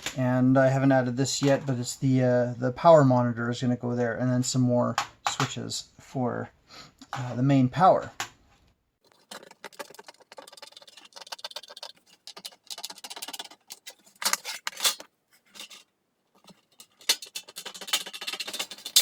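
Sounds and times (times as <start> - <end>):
small metal parts clicking and rattling: 9.0 - 19.0
metal tools clattering: 9.1 - 19.0.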